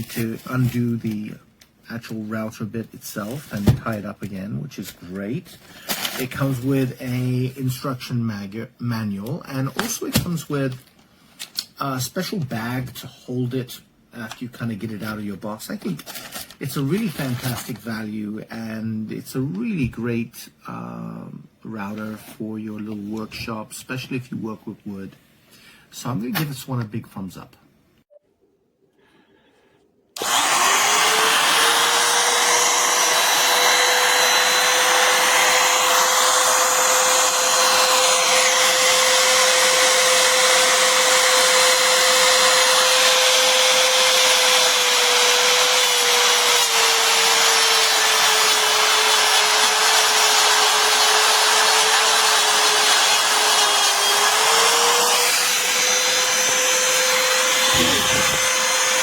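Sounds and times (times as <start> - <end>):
electric wood router whining: 30.2 - 59.0.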